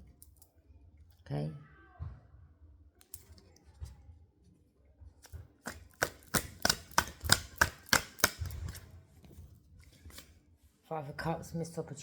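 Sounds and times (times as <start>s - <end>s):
cards tapping on a table: 5.7s - 8.8s.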